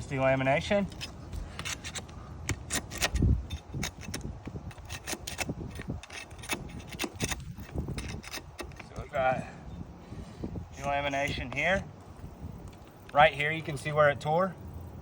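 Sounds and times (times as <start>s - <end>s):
asphalt shingles scraping and crackling: 0.0s - 9.2s.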